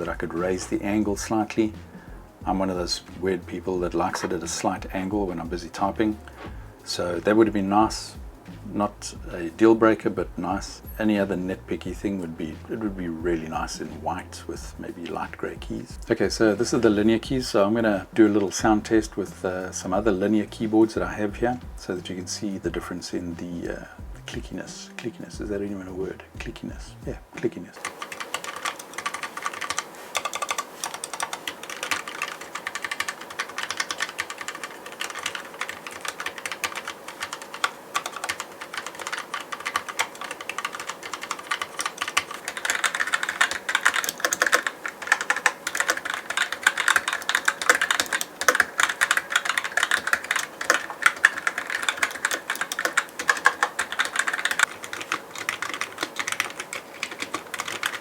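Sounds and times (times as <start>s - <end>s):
fast typing on mechanical keyboard: 0.0s - 8.2s, 27.8s - 58.0s.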